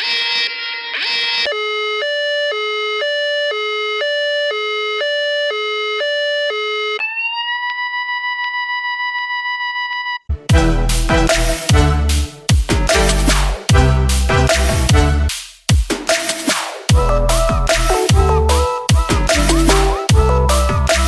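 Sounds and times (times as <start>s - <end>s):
electronic alarm tones: 1.4s - 10.3s
electronic music with heavy bass: 10.3s - 21.0s.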